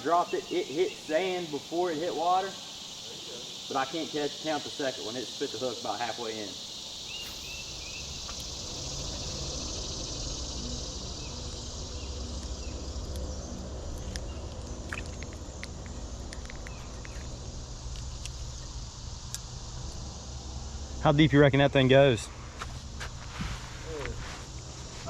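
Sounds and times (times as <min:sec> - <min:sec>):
insects chirring: 0:00.0 - 0:25.0
low rumble: 0:07.3 - 0:21.2.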